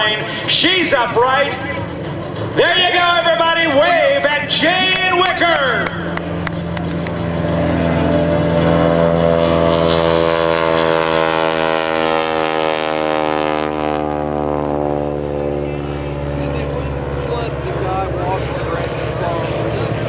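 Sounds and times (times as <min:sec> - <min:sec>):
biplane engine and propeller: 0:00.0 - 0:20.0.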